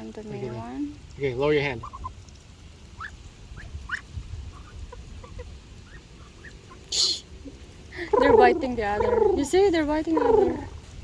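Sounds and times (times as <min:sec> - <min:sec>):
ducks and chickens clucking: 0:01.6 - 0:06.9, 0:07.6 - 0:10.8.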